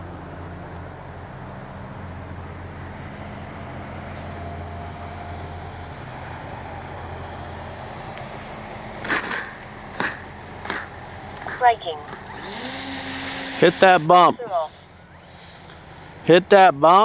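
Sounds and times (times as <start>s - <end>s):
model plane electric motor whine: 12.0s - 14.2s.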